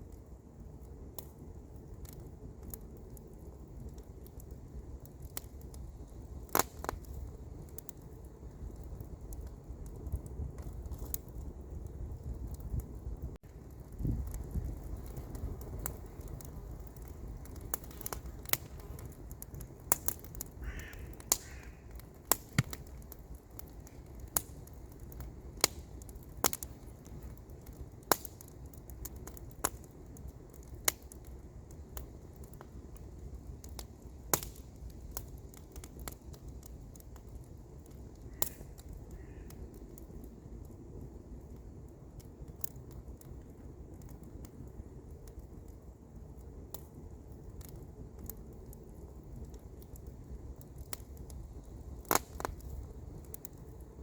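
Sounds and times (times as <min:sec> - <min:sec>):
campfire crackling and popping: 0:00.0 - 0:54.0
bird calling: 0:20.6 - 0:21.9.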